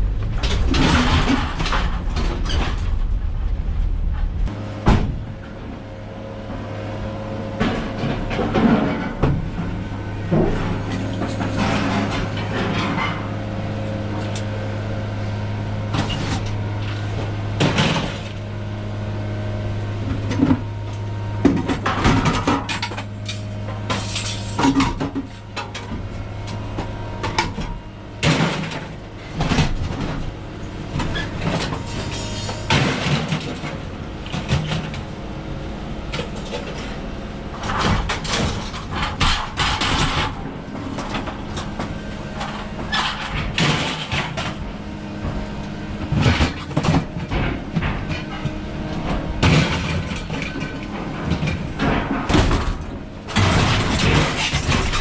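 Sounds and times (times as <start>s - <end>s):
knocks and clatters: 0.0s - 5.2s, 37.6s - 44.6s, 46.1s - 55.0s
vehicle engine humming: 0.0s - 55.0s.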